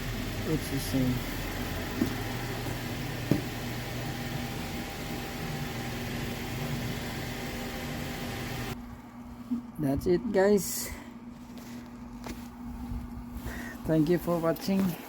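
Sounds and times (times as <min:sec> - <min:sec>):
car engine idling: 0:00.0 - 0:07.7.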